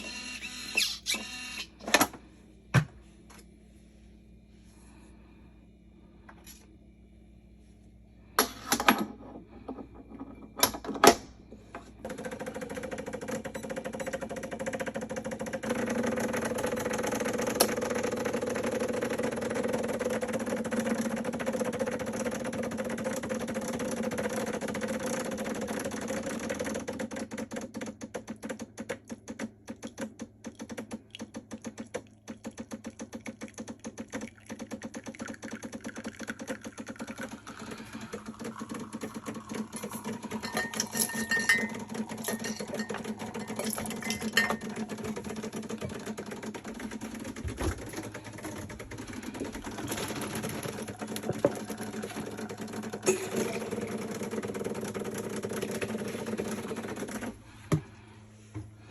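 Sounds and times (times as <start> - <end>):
espresso machine humming: 11.9 - 26.6, 31.0 - 57.8.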